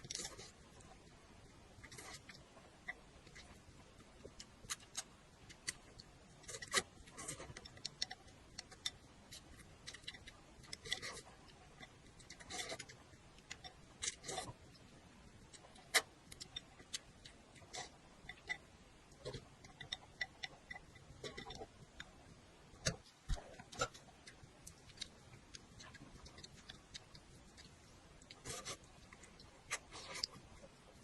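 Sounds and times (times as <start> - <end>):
chewing clicks and smacks: 22.8 - 30.4.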